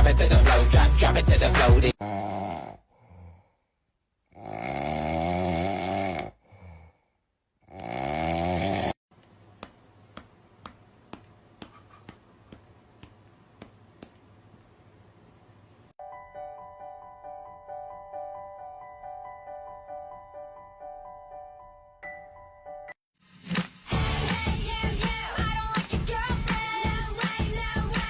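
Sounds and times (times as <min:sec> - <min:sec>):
loud snoring: 0:01.8 - 0:03.4, 0:04.3 - 0:07.0, 0:07.6 - 0:09.0.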